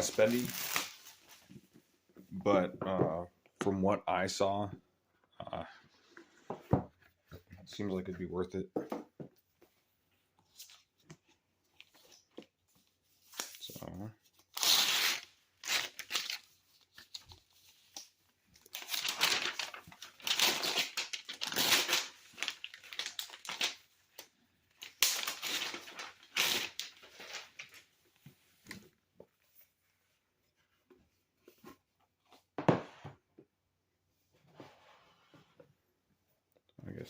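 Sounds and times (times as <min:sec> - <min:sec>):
packaging tearing and rustling: 0:00.0 - 0:01.2, 0:14.5 - 0:16.5, 0:18.6 - 0:23.8, 0:24.8 - 0:27.8.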